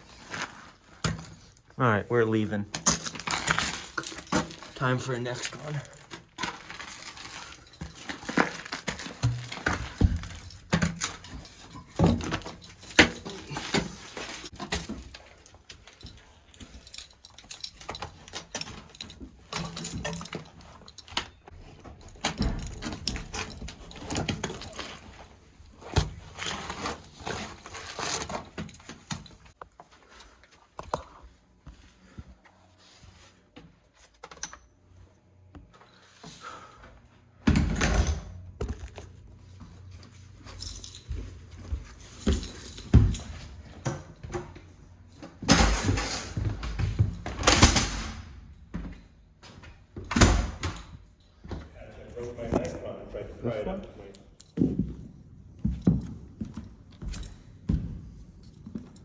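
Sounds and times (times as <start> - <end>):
rustling and scraping: 0.0 - 1.7, 2.9 - 34.2
clinks of keys or tools: 2.7 - 25.3, 40.4 - 44.6, 55.7 - 59.0.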